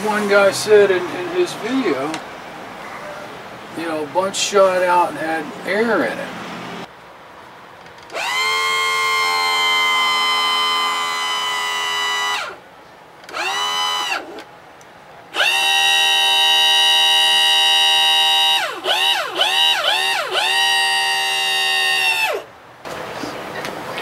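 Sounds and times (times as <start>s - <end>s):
electric pump motor whining: 8.1s - 12.6s, 13.3s - 14.5s, 15.3s - 22.5s.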